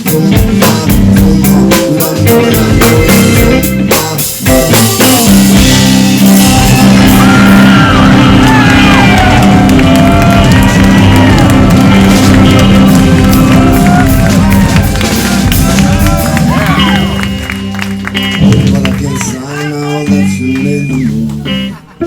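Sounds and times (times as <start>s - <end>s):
rock band playing live: 0.0s - 22.0s
audience whooping and shouting: 5.6s - 20.3s.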